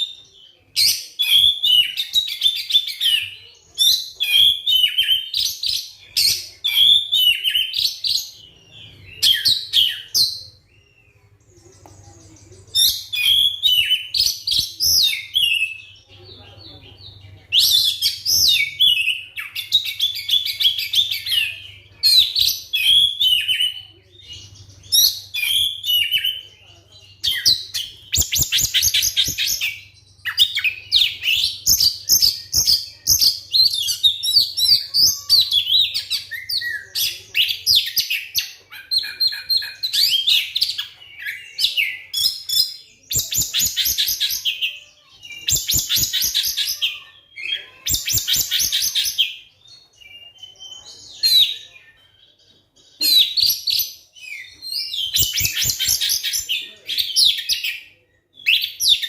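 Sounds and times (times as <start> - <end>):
bird singing whistled song: 0.0 - 11.3, 12.0 - 16.0, 17.5 - 26.5, 27.2 - 59.0.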